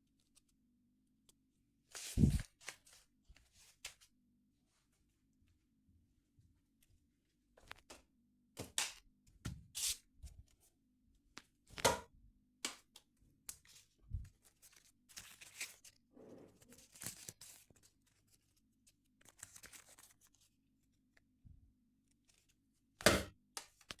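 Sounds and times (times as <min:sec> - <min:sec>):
paper rustling: 0:02.0 - 0:03.0.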